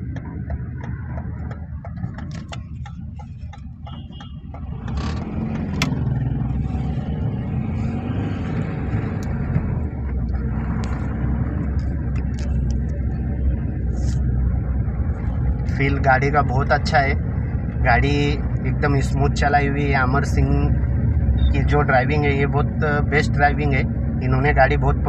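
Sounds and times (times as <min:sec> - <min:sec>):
small car engine: 0:00.0 - 0:15.8
road noise: 0:00.0 - 0:25.0.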